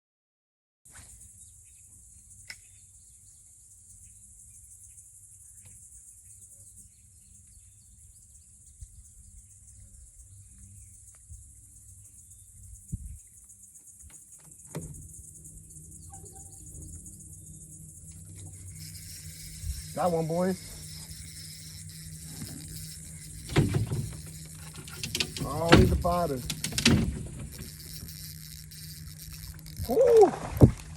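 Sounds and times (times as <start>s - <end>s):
insects buzzing: 0.9s - 30.9s
clicks and knocks: 23.4s - 28.2s.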